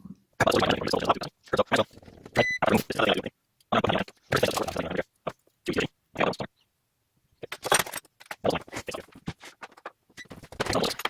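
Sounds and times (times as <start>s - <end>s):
small objects rustling and scraping: 7.4s - 11.0s.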